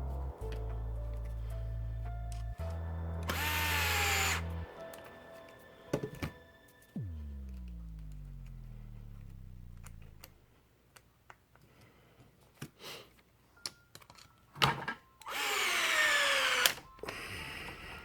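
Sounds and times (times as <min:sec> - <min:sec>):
electric screwdriver whirring: 0:03.2 - 0:04.6, 0:15.2 - 0:16.9.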